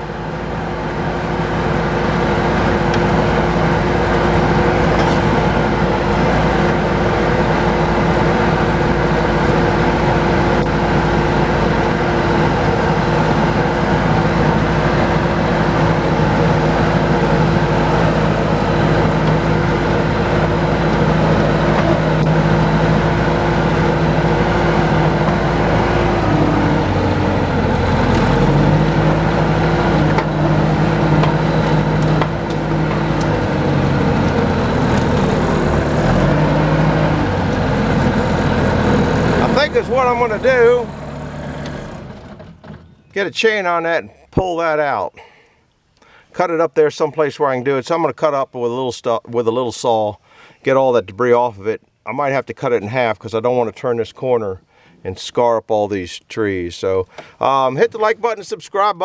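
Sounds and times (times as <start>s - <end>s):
machine engine running: 0.0s - 42.9s.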